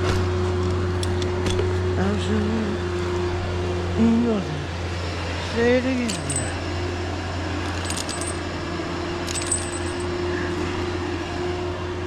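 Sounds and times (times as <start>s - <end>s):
metal climbing gear jingling: 6.0s - 6.7s, 7.6s - 8.6s, 9.2s - 10.2s.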